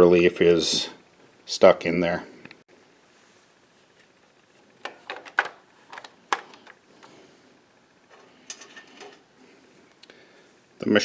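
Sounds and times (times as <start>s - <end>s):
plastic cover clicking into place: 4.8s - 6.8s.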